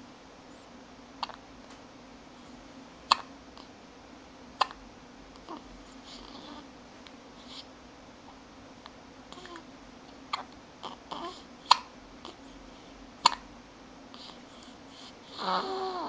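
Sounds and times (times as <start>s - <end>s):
hiccups: 3.1s - 3.3s, 10.3s - 11.9s, 13.2s - 13.4s.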